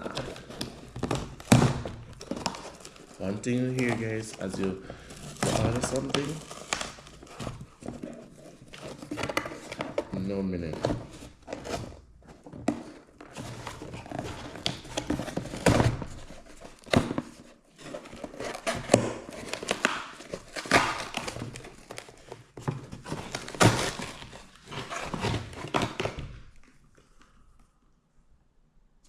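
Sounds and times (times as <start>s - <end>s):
knocks and thuds of items: 0.0s - 2.9s, 9.2s - 17.4s
plastic and paper crinkling: 0.0s - 27.6s.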